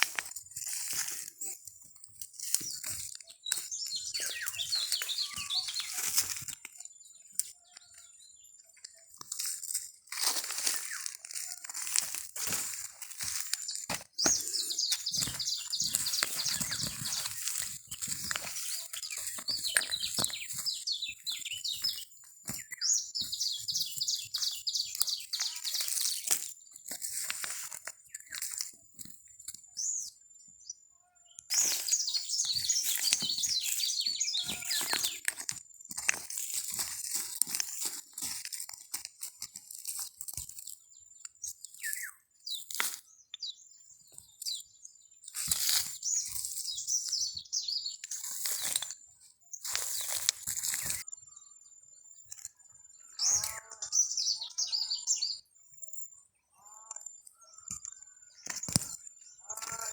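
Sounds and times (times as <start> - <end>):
soil crunching and scraping: 0.0 - 30.1, 31.5 - 51.2, 57.0 - 59.9
short high bird chirps: 3.4 - 6.0.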